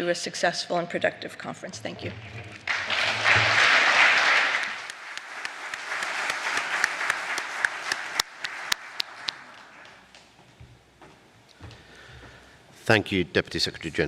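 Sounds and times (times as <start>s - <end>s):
audience applauding: 2.1s - 10.2s.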